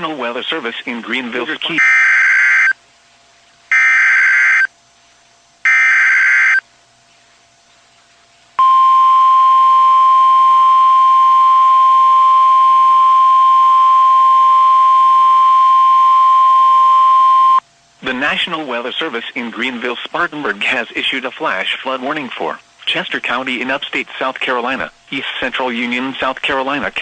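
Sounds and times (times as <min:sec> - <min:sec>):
steady warning alarm tone: 0:01.8 - 0:02.8, 0:03.7 - 0:04.7, 0:05.6 - 0:06.6, 0:08.6 - 0:17.6.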